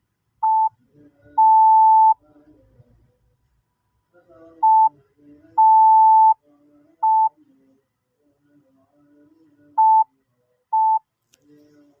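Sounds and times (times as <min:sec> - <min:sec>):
morse code beeps: 0:01.4 - 0:02.2, 0:05.6 - 0:06.4, 0:10.8 - 0:11.0.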